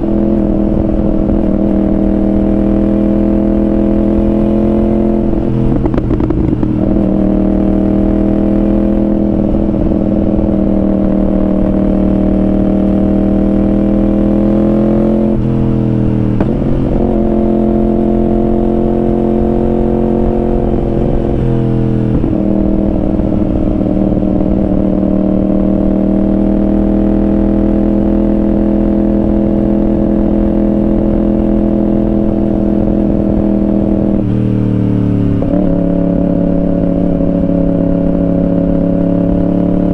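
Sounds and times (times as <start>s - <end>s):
motorcycle engine cruising: 0.0s - 39.9s
wind and road noise: 0.0s - 39.9s.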